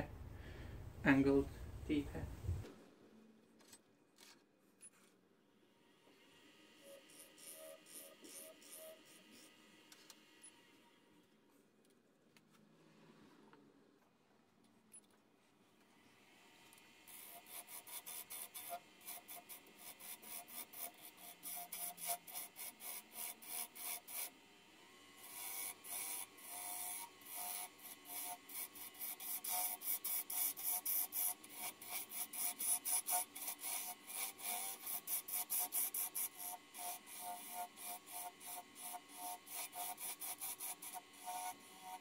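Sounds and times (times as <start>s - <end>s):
gouge rasping on sharpening stone: 6.9s - 9.5s, 17.1s - 24.3s, 25.2s - 42.0s.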